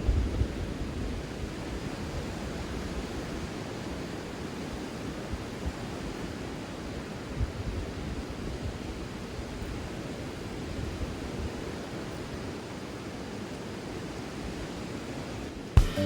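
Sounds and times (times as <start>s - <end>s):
wind buffeting microphone: 0.0s - 12.4s
surf washing on beach: 0.0s - 15.8s.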